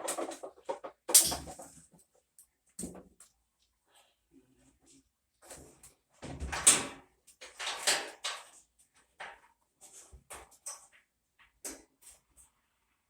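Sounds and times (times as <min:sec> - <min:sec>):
washing machine parts scraping: 0:00.1 - 0:01.8.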